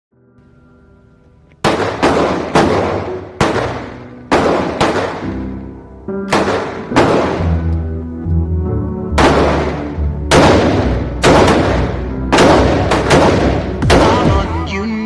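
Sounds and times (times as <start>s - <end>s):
background music: 0.2s - 15.0s
rifle shots: 1.6s - 5.6s, 6.3s - 7.7s, 9.2s - 14.6s.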